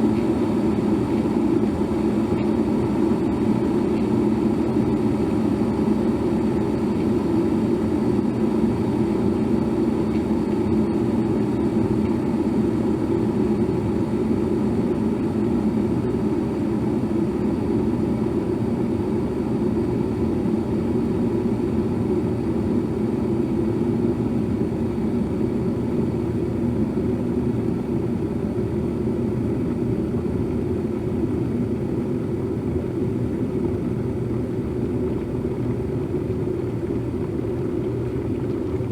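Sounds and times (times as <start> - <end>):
kettle water bubbling: 33.5 - 38.9.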